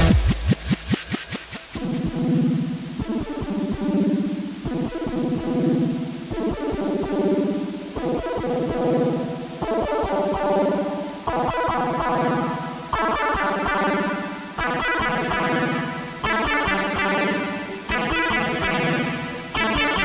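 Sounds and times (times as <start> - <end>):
synthesizer chords: 0.0 - 4.3, 9.6 - 20.0.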